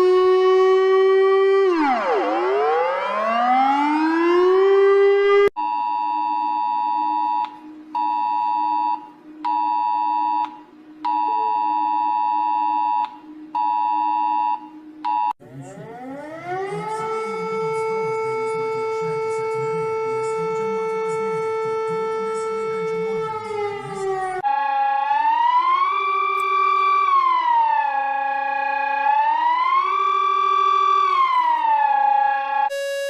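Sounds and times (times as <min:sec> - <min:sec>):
siren wailing: 0:00.0 - 0:33.0
two-note alert tone beeping: 0:32.7 - 0:33.0.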